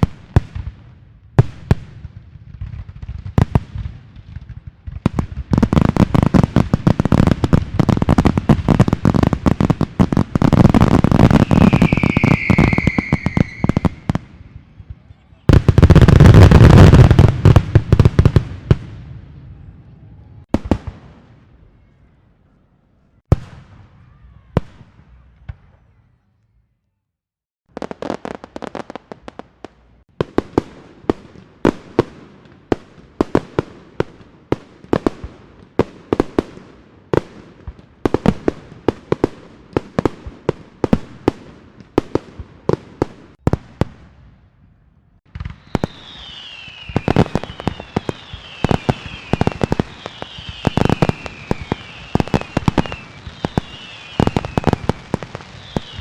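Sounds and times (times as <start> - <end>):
firecrackers bangs and pops: 0.0 - 19.2, 27.7 - 44.4, 45.2 - 56.0
fireworks hiss: 5.7 - 14.6, 45.4 - 56.0
falling firework whistles: 10.4 - 14.6, 45.3 - 56.0.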